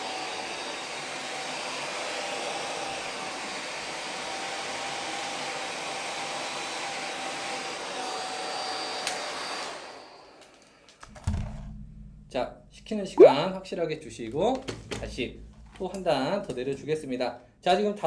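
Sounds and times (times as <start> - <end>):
hair dryer blowing: 0.0 - 11.0.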